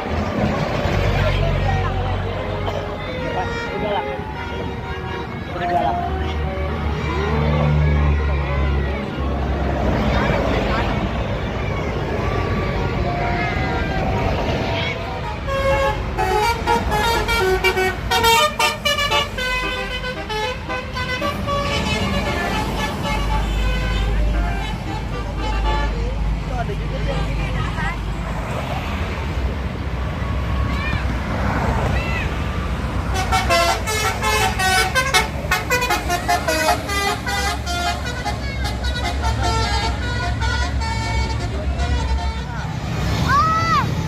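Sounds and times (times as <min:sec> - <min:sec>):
low rumble of traffic: 0:00.0 - 0:44.0
bus musical horn playing tune: 0:02.3 - 0:07.1, 0:15.1 - 0:26.2, 0:33.0 - 0:42.8.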